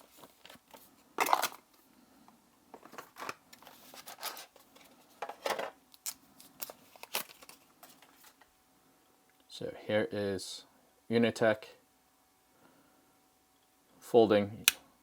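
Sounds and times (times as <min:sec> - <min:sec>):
plastic charger and packaging handled: 0:00.0 - 0:01.9, 0:02.7 - 0:08.5.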